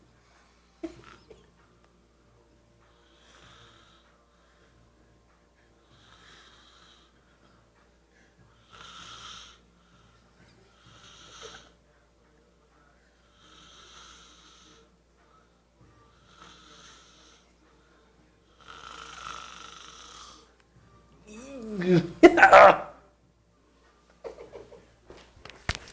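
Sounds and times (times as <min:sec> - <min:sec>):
raspy snoring: 0:08.6 - 0:10.2, 0:13.3 - 0:14.9, 0:18.5 - 0:20.5.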